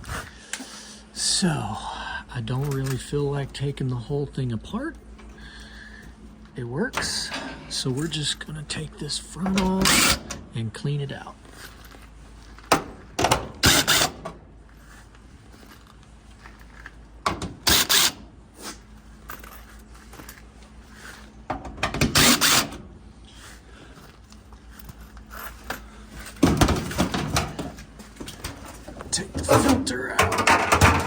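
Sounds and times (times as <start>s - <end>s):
mechanical rattling and clatter: 11.5s - 14.4s, 21.6s - 22.8s, 24.2s - 31.0s.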